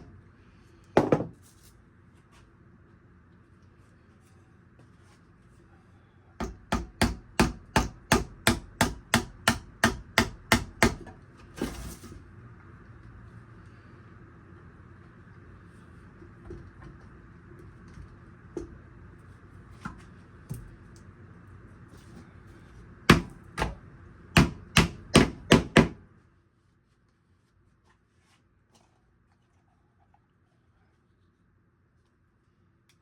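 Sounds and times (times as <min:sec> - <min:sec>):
hammer tapping on wood: 0:24.4 - 0:26.0.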